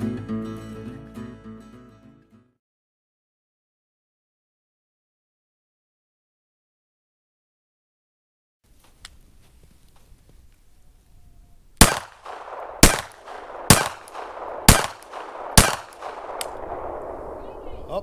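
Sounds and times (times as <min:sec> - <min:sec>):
pistol shots with echo: 0:11.8 - 0:17.7.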